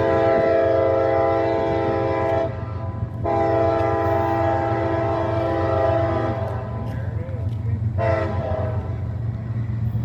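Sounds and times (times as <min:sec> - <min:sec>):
locomotive air horn blasts: 0:00.0 - 0:06.8, 0:08.0 - 0:09.0
train rumbling: 0:00.0 - 0:10.0.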